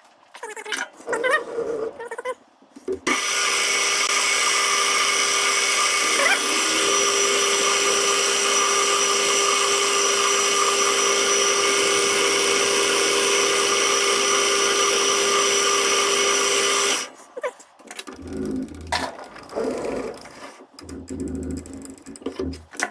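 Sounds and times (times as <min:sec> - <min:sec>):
power tool humming and whining: 0:03.1 - 0:17.1.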